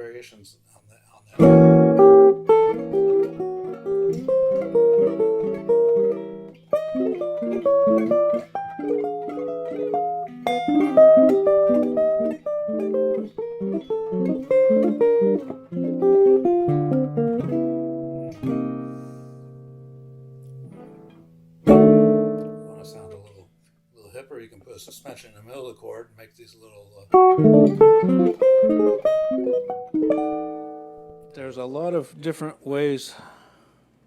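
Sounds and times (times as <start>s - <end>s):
solo jazz guitar chords: 1.4s - 23.7s, 27.0s - 32.4s.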